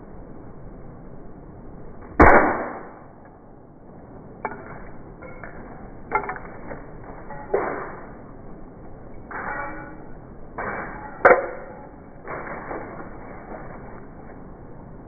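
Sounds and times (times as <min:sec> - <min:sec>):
light knocks and clinks: 0:04.4 - 0:08.2, 0:09.2 - 0:12.0.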